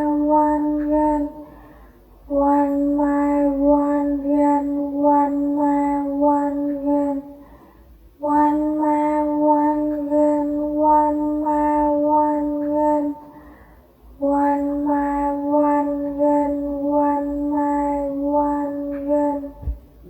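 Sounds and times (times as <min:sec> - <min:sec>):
child-like voice singing a chant: 0:00.0 - 0:19.9.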